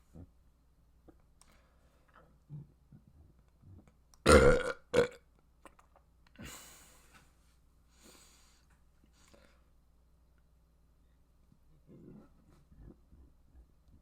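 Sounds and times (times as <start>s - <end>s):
quiet breathy noises: 0.0s - 4.2s, 6.2s - 14.0s
person burping loudly: 4.2s - 5.2s.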